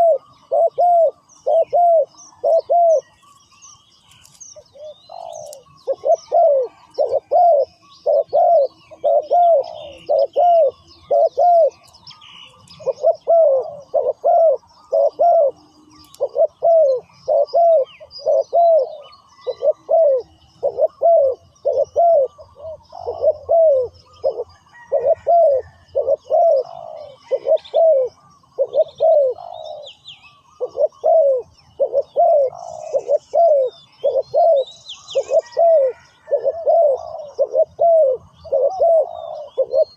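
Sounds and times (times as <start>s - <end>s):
doves cooing: 0.0s - 3.4s, 4.1s - 39.9s
small birds chirping: 0.0s - 39.9s.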